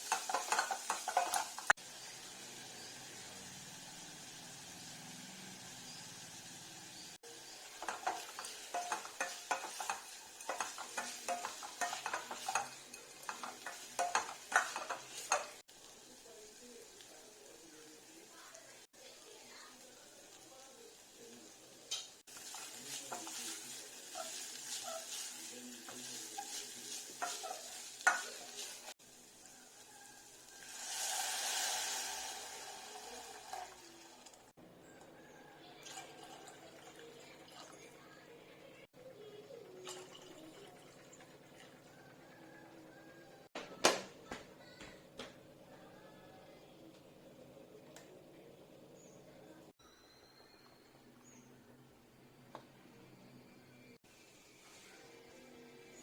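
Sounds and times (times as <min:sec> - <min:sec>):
utensil scraping vegetables in pan: 0:00.0 - 0:01.8, 0:07.4 - 0:15.6, 0:22.0 - 0:29.0
steady sizzle: 0:00.0 - 0:34.6, 0:53.9 - 0:56.0.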